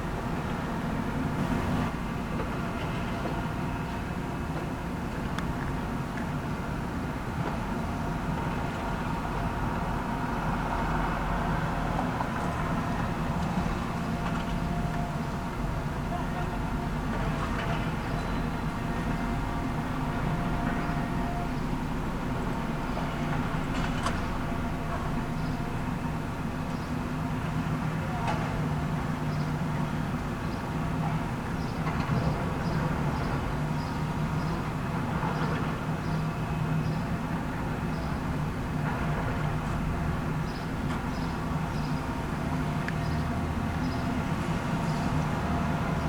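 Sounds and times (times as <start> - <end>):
excavator diesel engine running: 0.1 - 3.7
constant whine: 1.2 - 2.1.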